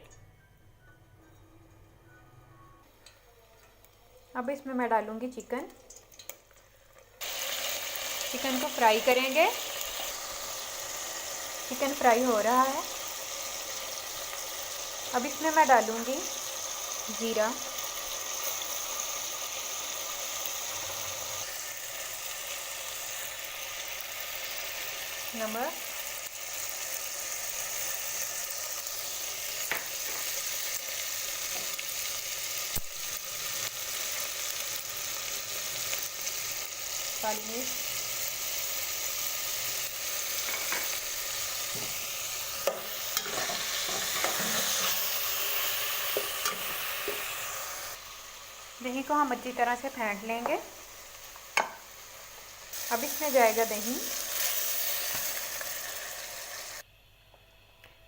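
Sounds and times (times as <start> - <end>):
chicken sizzling in hot oil: 7.2 - 56.9.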